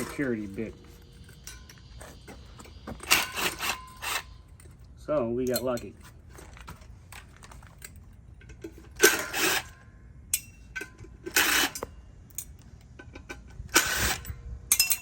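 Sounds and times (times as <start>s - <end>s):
small metal clinks: 2.6s - 6.1s, 11.8s - 13.4s, 14.7s - 15.0s.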